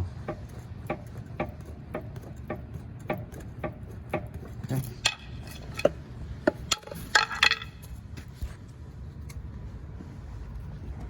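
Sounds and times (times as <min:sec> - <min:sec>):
low steady background noise: 0:00.0 - 0:11.0
metal tool tapping metal: 0:00.3 - 0:07.7.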